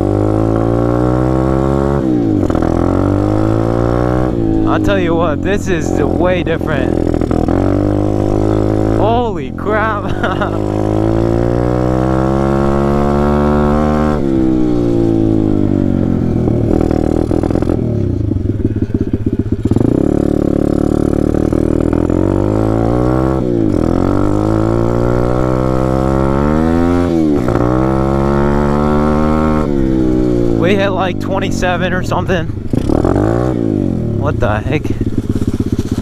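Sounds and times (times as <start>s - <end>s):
motorbike engine revving: 0.0s - 36.0s.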